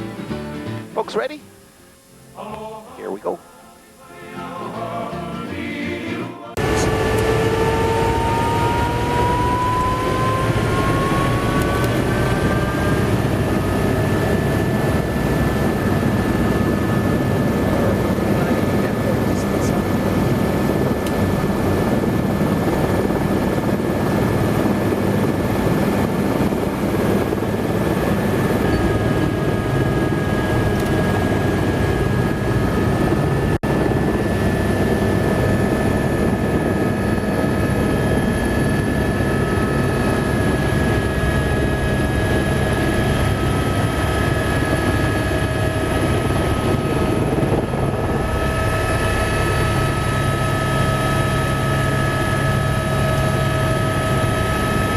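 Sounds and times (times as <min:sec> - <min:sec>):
high whines: 0:00.9 - 0:17.2
helicopter engine and rotor drone: 0:06.6 - 0:54.9.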